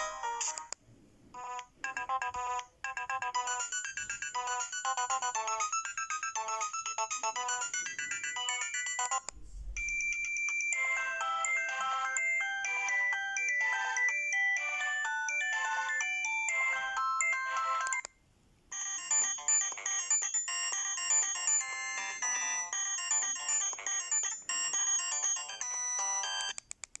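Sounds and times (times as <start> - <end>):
phone ringtone melody: 0.0 - 0.7, 1.4 - 18.1, 18.7 - 26.6.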